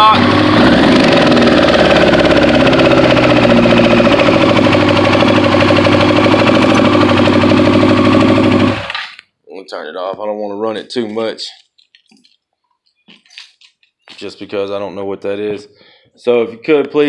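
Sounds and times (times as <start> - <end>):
motorcycle engine running: 0.0 - 9.1.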